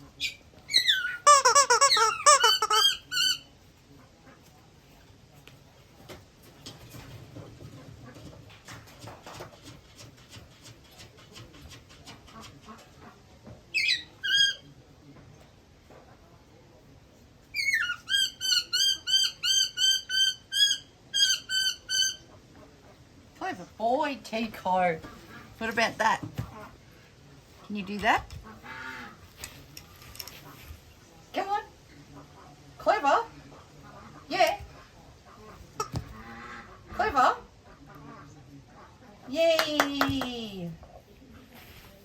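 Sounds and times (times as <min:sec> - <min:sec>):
squeak toy squeaking: 0:00.7 - 0:03.5, 0:17.6 - 0:22.2.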